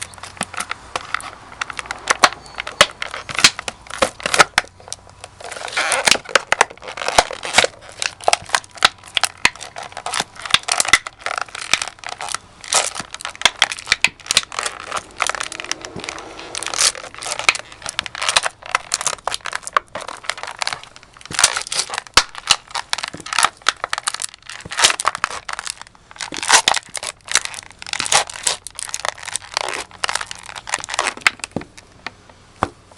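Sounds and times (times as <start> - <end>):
snack jar crushed under boots: 16.6 - 31.7.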